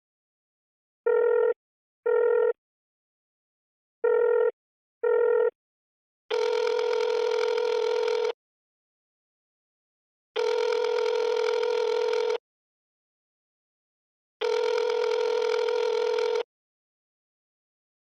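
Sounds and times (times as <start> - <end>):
electronic telephone ringing tone: 1.1 - 2.6, 4.0 - 5.6, 6.3 - 8.4, 10.4 - 12.4, 14.4 - 16.5.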